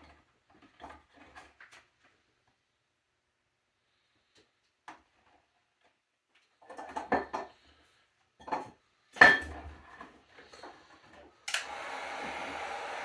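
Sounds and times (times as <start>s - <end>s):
hard objects clattering on a bench: 6.6s - 7.6s
heat gun blowing: 11.5s - 13.0s.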